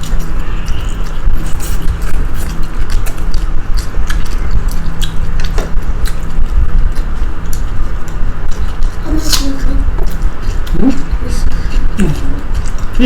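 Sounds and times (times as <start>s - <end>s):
chewing and eating: 0.0s - 13.0s
small mouth clicks and smacks: 0.0s - 13.0s.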